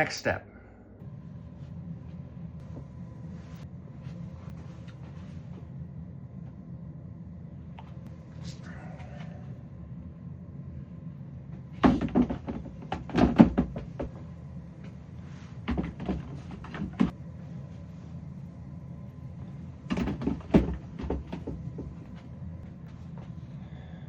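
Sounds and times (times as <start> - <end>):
steady low hum: 0.0 - 24.0
hard objects knocking and clattering: 11.8 - 14.2.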